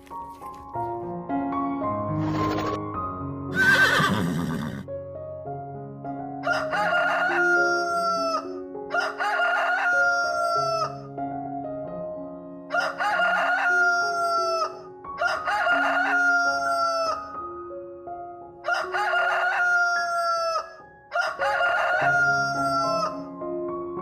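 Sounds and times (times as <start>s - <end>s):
rooster crowing: 6.4s - 11.0s, 12.7s - 17.3s, 18.6s - 23.2s.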